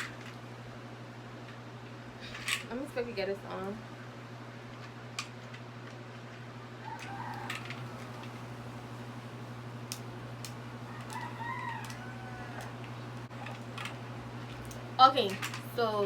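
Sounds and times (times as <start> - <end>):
rooster crowing: 6.8 - 8.7, 10.8 - 13.2.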